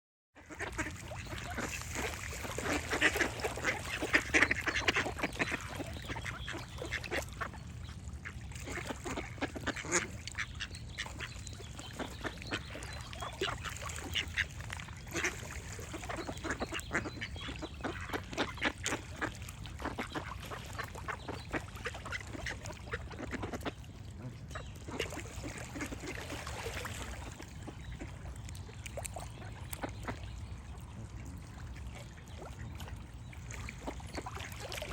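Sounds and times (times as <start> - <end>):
ducks quacking: 0.4 - 28.4
birds singing: 3.7 - 8.0, 8.8 - 19.3.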